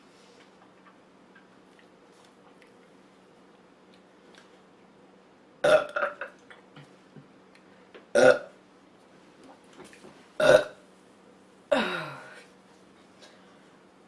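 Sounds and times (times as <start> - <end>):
girl burping: 8.2 - 8.5, 10.4 - 10.8, 11.7 - 12.4.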